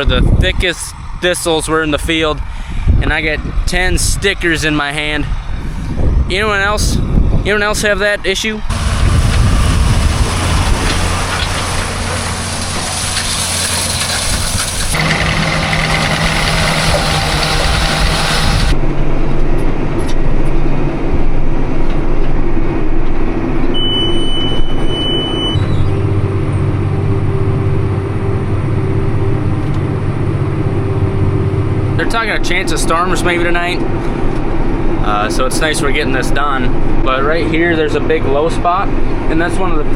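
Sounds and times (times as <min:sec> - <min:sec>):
tractor engine running under load: 0:08.7 - 0:18.8
high-pitched beep: 0:23.7 - 0:25.9.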